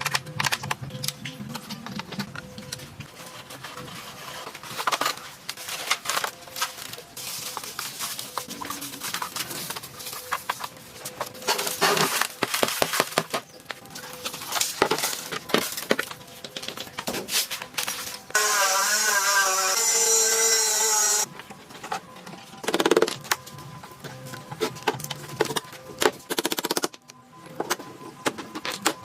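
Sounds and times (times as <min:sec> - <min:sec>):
small power tool running: 0:18.4 - 0:21.2.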